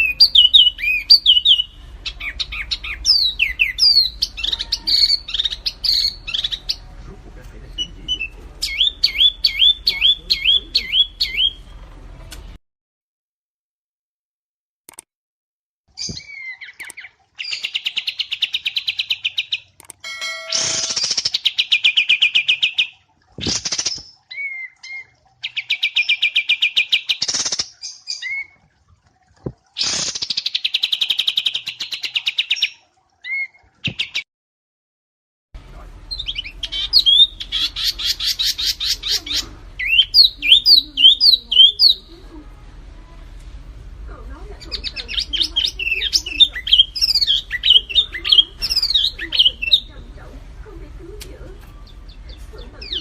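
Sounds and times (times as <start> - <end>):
songbird trilling: 0.0 - 6.9, 7.7 - 11.6, 16.1 - 22.9, 36.1 - 42.2, 44.6 - 50.0, 51.8 - 53.0
quick sweeping bird notes: 20.1 - 21.4.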